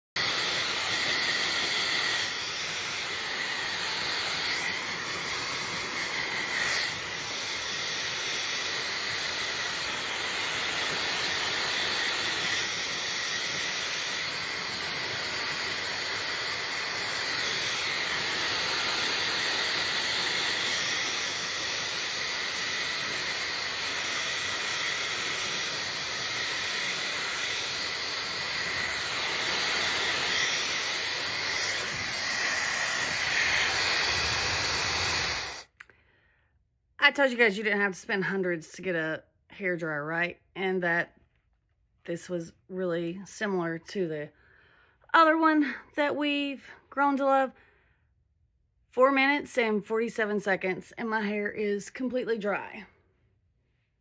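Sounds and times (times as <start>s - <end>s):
hair dryer running: 0.0s - 35.9s.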